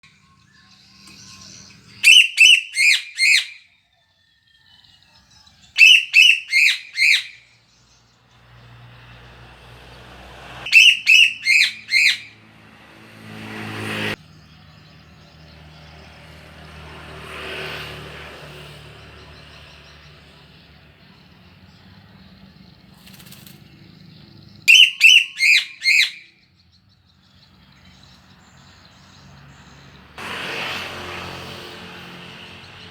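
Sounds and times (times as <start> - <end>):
passing vehicle hum: 4.8 - 32.9
songbird sharp repeated notes: 10.7 - 12.3.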